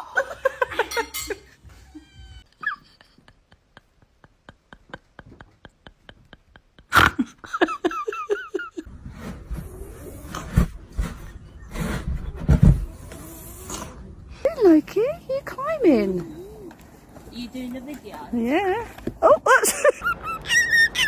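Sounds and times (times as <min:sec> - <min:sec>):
cat meowing: 0:01.9 - 0:02.5.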